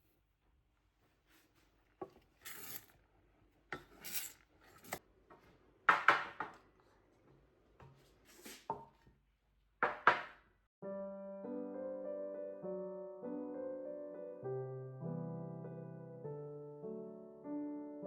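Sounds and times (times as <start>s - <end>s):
objects scraping and clicking: 1.8s - 3.0s, 3.7s - 5.0s.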